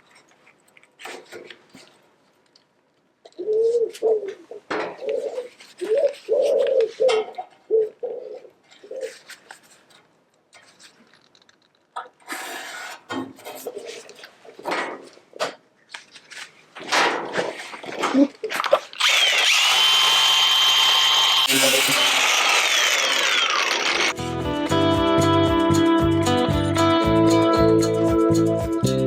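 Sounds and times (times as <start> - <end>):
pigeon cooing: 3.3 - 9.3.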